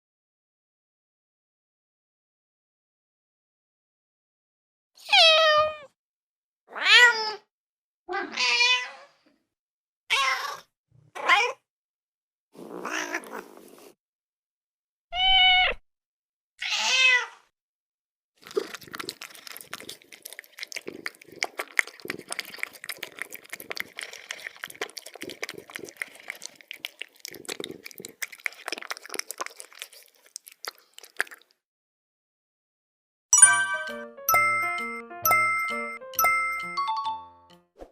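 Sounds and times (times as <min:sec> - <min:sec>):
cat meowing: 0:05.0 - 0:05.9, 0:06.7 - 0:07.4, 0:08.1 - 0:09.0, 0:10.1 - 0:10.6, 0:11.2 - 0:11.6, 0:15.2 - 0:15.8, 0:16.6 - 0:17.4
cat crunching food: 0:18.4 - 0:31.5.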